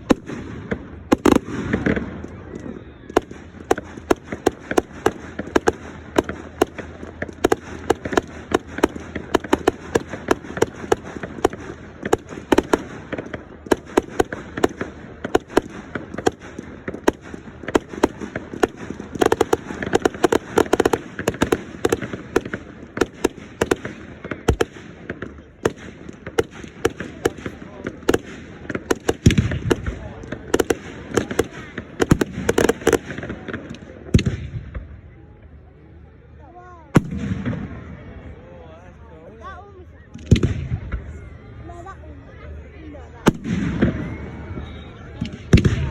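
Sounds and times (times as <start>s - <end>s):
fireworks bangs and crackling pops: 0.0s - 35.6s, 36.9s - 38.2s, 40.0s - 42.0s, 43.0s - 45.9s.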